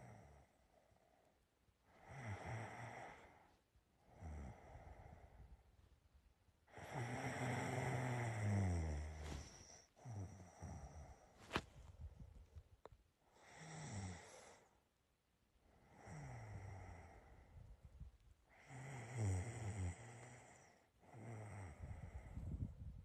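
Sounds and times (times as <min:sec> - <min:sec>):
person snoring: 0:04.1 - 0:05.3, 0:06.7 - 0:11.2, 0:13.4 - 0:14.6, 0:15.8 - 0:17.4, 0:18.6 - 0:22.4.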